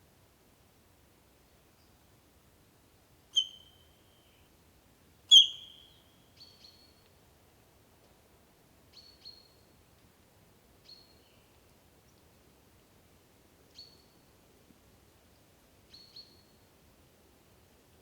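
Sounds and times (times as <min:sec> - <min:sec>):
deer whistling: 0:05.3 - 0:05.8.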